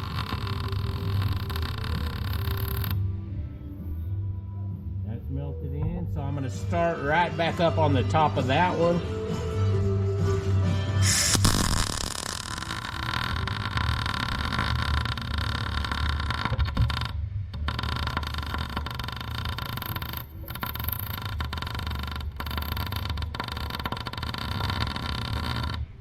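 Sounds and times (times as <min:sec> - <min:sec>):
welding arc crackling: 0:00.0 - 0:03.0, 0:11.0 - 0:26.0
low welder hum: 0:00.0 - 0:03.8, 0:11.0 - 0:26.0.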